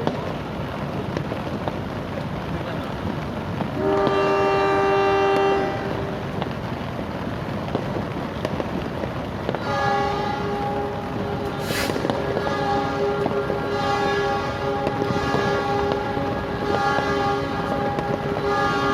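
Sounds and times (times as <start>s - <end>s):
heavy rain hiss: 0.0s - 18.9s
locomotive horn blasts: 3.8s - 6.2s, 9.6s - 18.9s.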